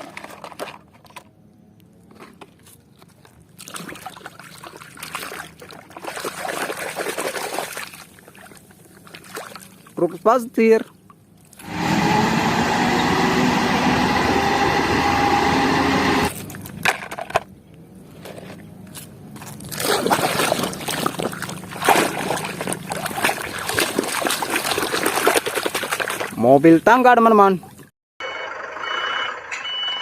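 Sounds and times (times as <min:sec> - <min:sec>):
brushing and scraping on plastic: 0:18.0 - 0:19.7.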